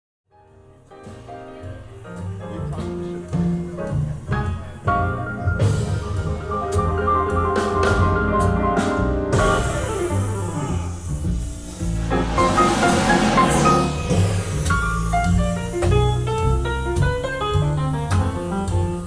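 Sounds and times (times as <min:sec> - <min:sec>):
sharp hits: 0:11.4 - 0:15.8.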